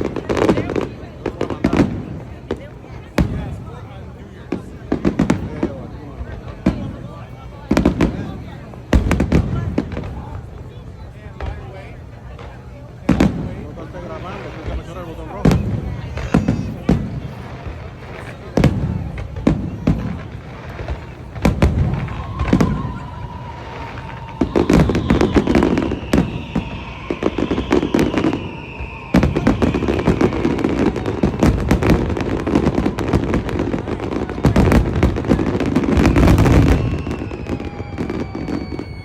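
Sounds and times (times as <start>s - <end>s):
fireworks bangs and crackles: 0.0s - 39.0s
low rumbling booms: 13.0s - 39.0s
whistles falling in pitch: 22.1s - 31.3s, 36.0s - 39.0s.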